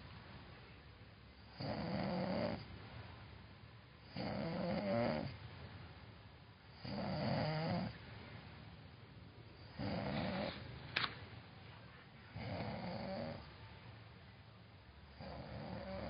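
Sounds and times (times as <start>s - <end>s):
rattly snoring: 1.5s - 2.7s, 4.1s - 5.4s, 6.7s - 7.9s, 9.6s - 10.7s, 12.4s - 13.5s, 15.1s - 16.0s
quiet breathing: 2.2s - 14.3s.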